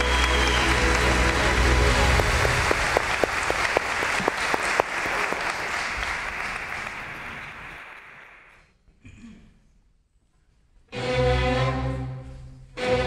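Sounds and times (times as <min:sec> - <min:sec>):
audience applauding: 0:00.0 - 0:08.6.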